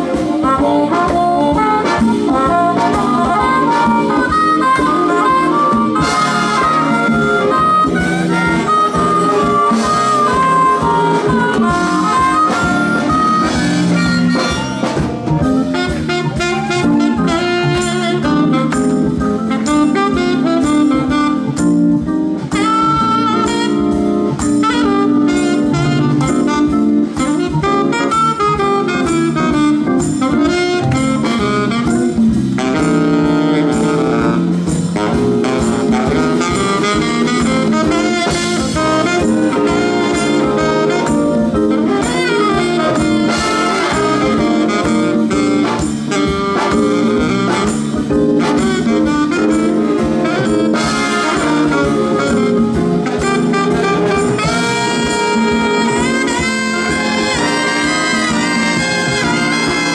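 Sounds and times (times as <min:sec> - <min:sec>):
drum beat: 0:00.0 - 0:59.9
jazz blues band playing: 0:00.0 - 0:59.9
saxophone: 0:00.0 - 0:59.9.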